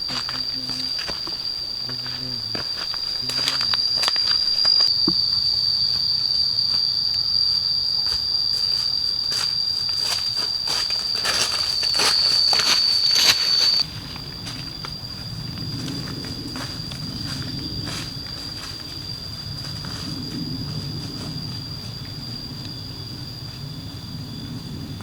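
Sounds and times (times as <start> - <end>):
insect droning: 0.0 - 25.0
footsteps in leaf litter: 8.2 - 13.9.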